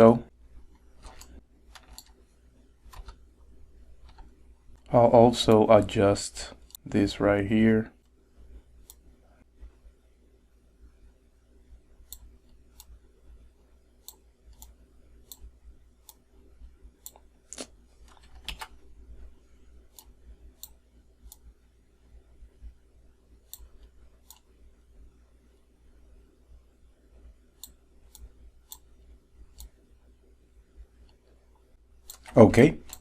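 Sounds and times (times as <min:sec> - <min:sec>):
faint steady low hum: 0:00.0 - 0:33.0
computer mouse clicking: 0:00.7 - 0:02.2, 0:02.9 - 0:03.2, 0:04.0 - 0:04.9, 0:08.8 - 0:09.0, 0:12.0 - 0:13.0, 0:14.0 - 0:16.2, 0:17.0 - 0:17.3, 0:18.0 - 0:18.8, 0:19.9 - 0:21.5, 0:23.5 - 0:24.5, 0:27.6 - 0:28.9, 0:29.5 - 0:29.8, 0:31.0 - 0:33.0.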